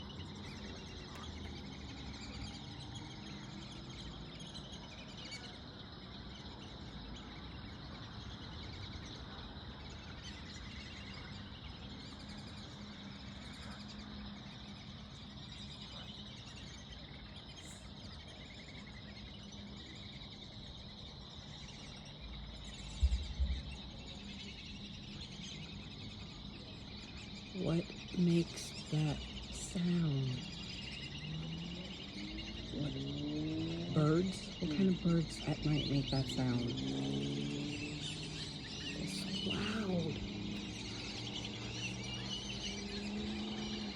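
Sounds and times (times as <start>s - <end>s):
high-pitched chirping calls: 0.0s - 43.9s
steady high drone: 23.8s - 43.9s.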